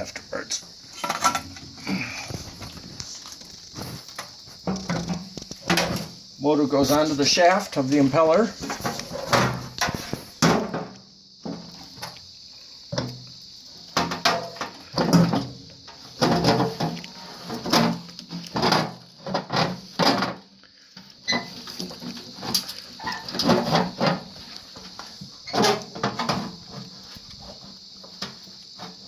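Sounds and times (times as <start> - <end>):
metal clunks and knocks: 0.9 - 2.7, 4.2 - 6.2, 8.6 - 12.1, 12.9 - 13.2, 13.9 - 20.5, 21.3 - 24.4, 25.5 - 26.9.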